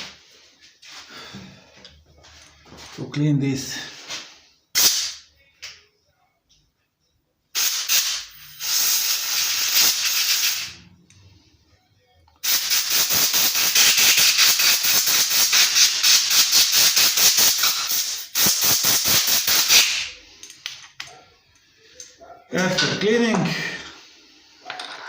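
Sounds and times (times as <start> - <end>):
compressed air blow gun hissing: 7.6 - 10.8, 12.5 - 20.1.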